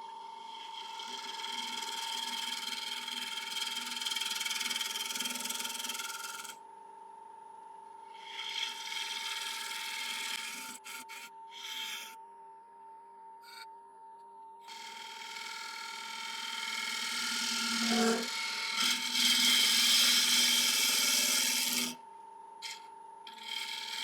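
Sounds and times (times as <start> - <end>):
lathe whine: 0.0 - 6.6, 8.1 - 12.2, 14.7 - 24.0
gouge hissing cut on wood: 1.0 - 6.5, 8.2 - 12.1, 15.2 - 22.0, 22.6 - 24.0.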